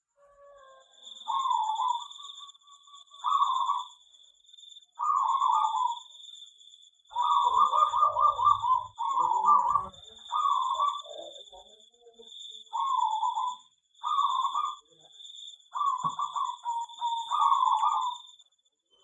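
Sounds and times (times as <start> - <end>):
doves cooing: 1.3 - 2.2, 3.2 - 3.9, 5.0 - 6.0, 7.1 - 11.6, 12.7 - 14.9, 15.8 - 18.2.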